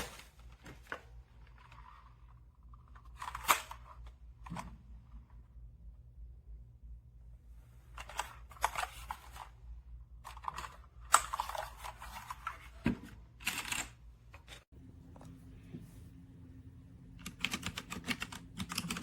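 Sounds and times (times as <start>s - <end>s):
steady low hum: 0.0s - 19.0s
handling scrapes rustles and clicks: 7.7s - 9.6s, 10.2s - 15.9s.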